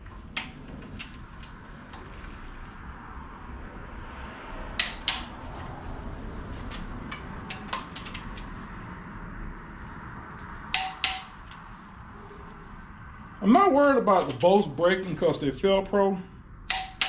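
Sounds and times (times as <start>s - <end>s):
wrench clicking: 10.8s - 11.6s, 16.7s - 17.0s.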